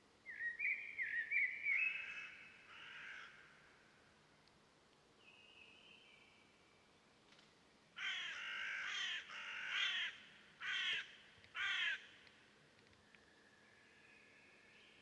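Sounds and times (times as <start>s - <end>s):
bird cawing: 1.8s - 3.7s, 8.0s - 12.2s.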